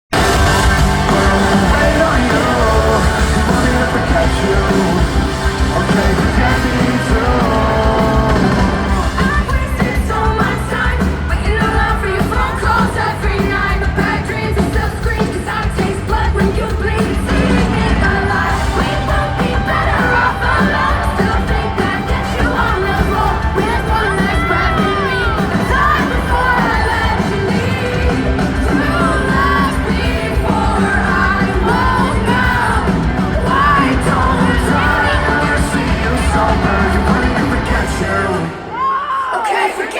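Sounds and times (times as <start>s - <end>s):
crowd yelling and cheering: 0.0s - 39.9s
live rock band playing: 0.1s - 38.8s
person singing: 0.1s - 39.9s.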